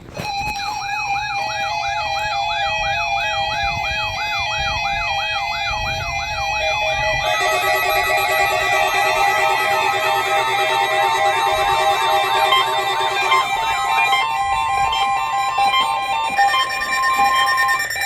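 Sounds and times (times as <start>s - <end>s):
electronic siren-like wail: 0.2s - 18.0s
synthesized melody: 0.2s - 18.0s
steady electronic tone: 7.2s - 18.0s.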